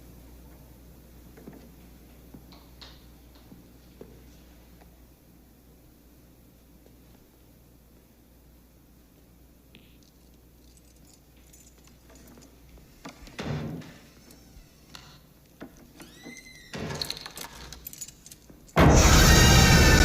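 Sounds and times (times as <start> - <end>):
handling clicks and knocks: 10.0 - 14.4.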